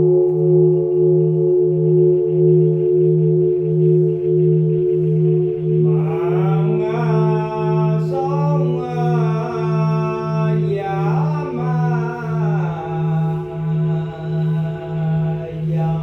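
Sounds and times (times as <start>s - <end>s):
ringing bell drone: 0.0s - 16.0s
voice chanting long notes: 5.0s - 16.0s.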